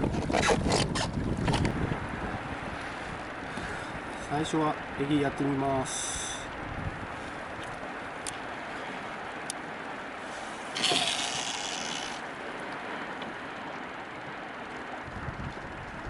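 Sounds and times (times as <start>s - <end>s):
water around a kayak: 0.0s - 16.0s
wind: 0.0s - 16.0s
hissing rush: 10.3s - 12.2s.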